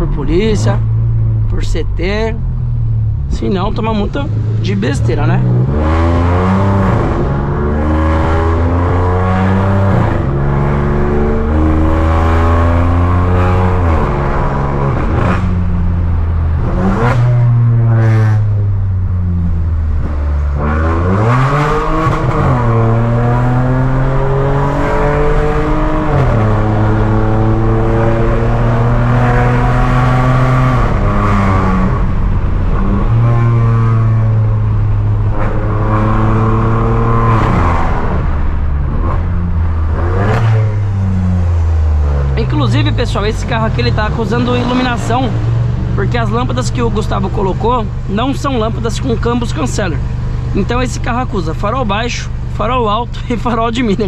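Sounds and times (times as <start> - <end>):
loud car engine driving: 0.0 - 54.0.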